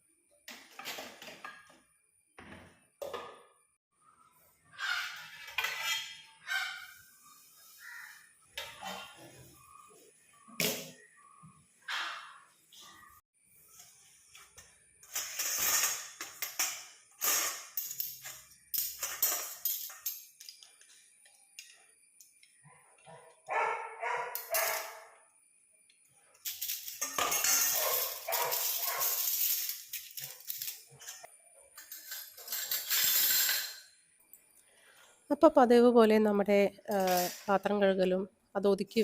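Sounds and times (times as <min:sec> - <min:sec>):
dog barking: 0:23.1 - 0:25.2, 0:27.8 - 0:29.2.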